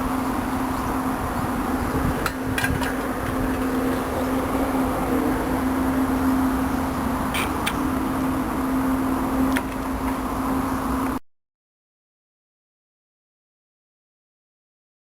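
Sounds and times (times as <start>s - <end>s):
steady hum and noise: 0.0s - 11.2s.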